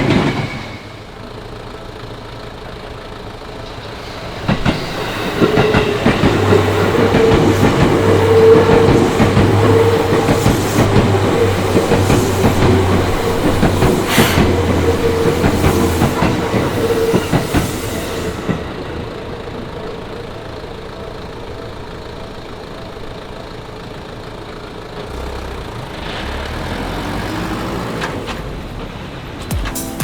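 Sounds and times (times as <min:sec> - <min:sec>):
train wheels clattering over rail joints: 0:00.0 - 0:01.4, 0:03.6 - 0:23.1.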